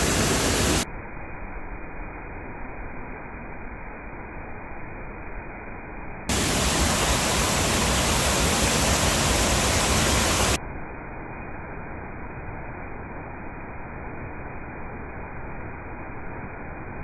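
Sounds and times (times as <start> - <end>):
bright water hiss: 0.0 - 0.8, 6.3 - 10.6
muffled waterfall rushing: 0.0 - 0.8, 6.3 - 10.6.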